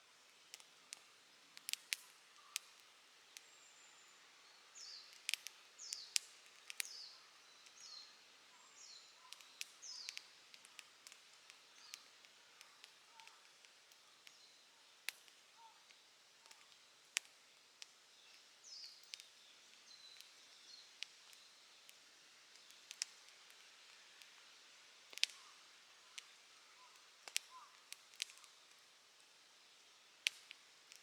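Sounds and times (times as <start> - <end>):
campfire crackling and popping: 0.1 - 3.6, 4.6 - 31.0
faint bird chirps: 6.8 - 10.9, 11.7 - 16.8, 25.2 - 28.7.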